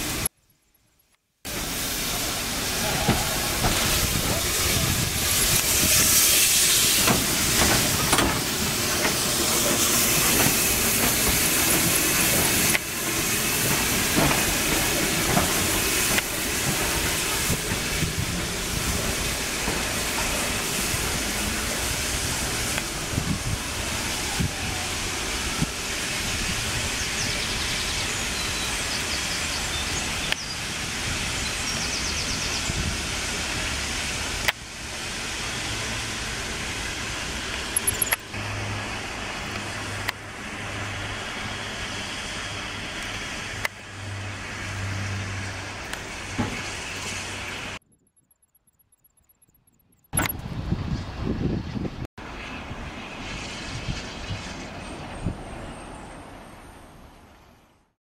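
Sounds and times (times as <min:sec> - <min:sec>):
steam locomotive hissing: 0:01.5 - 0:37.8
train rumbling on rails: 0:01.5 - 0:47.8, 0:50.2 - 0:57.9.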